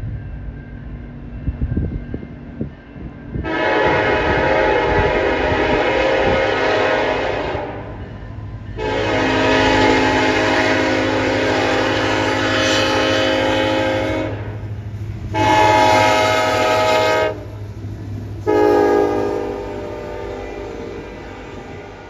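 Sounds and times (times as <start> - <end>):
wind buffeting microphone: 0.0 - 22.0
locomotive air horn blasts: 3.4 - 7.9, 8.8 - 14.6, 15.4 - 17.4, 18.5 - 22.0.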